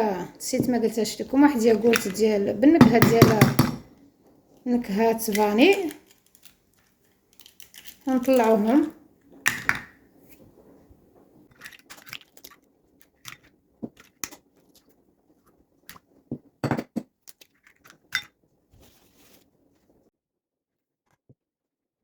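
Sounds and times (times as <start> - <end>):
mixing bowl and utensils clinking: 0.5 - 3.8.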